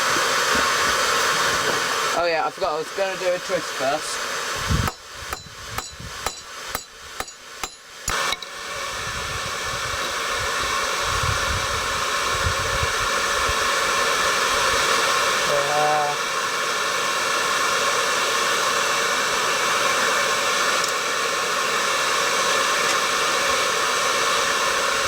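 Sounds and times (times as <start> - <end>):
hammer striking hot steel on anvil: 4.8 - 8.5.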